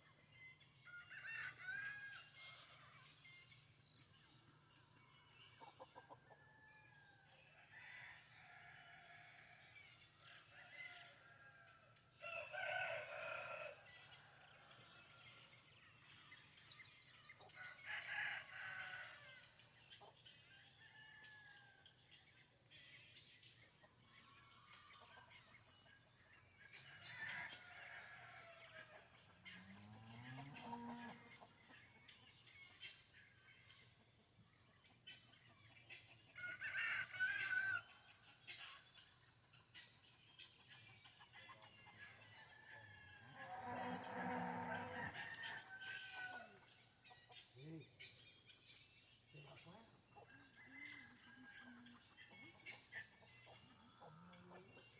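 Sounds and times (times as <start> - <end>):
rooster crowing: 10.5 - 14.8, 17.6 - 19.5, 42.2 - 46.6
small birds chirping: 19.0 - 54.9.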